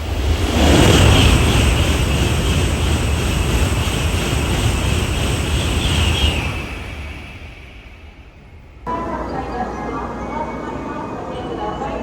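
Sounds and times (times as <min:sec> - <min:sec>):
high-speed train passing: 0:00.0 - 0:12.0.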